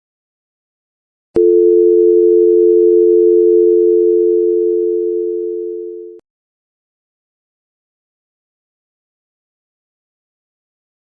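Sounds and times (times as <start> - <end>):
telephone dial tone: 1.4 - 6.2.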